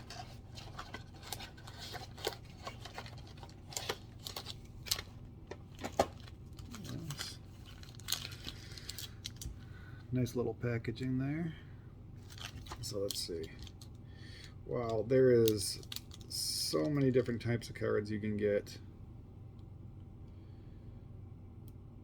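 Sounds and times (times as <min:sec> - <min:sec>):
paper and cardboard rustling: 0:00.0 - 0:09.4.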